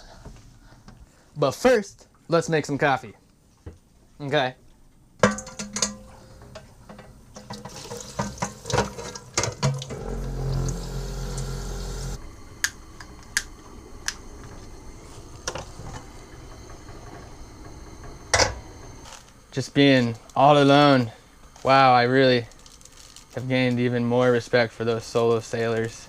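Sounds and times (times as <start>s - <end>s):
tap water running: 6.9s - 12.2s.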